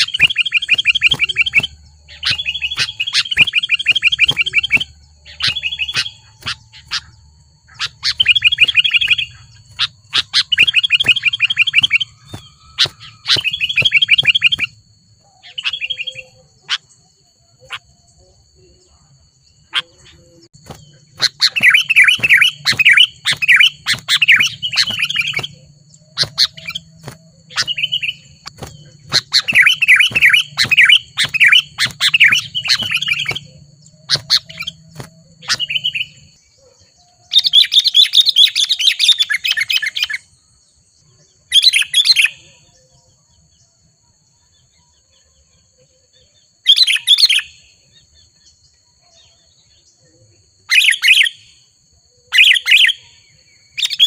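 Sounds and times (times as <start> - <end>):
bulbuls bubbling chirps: 0.0 - 42.9.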